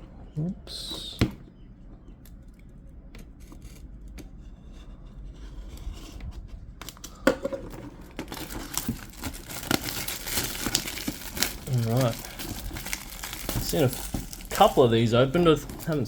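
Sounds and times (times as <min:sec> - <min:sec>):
plastic packaging crinkling: 0:08.1 - 0:16.0.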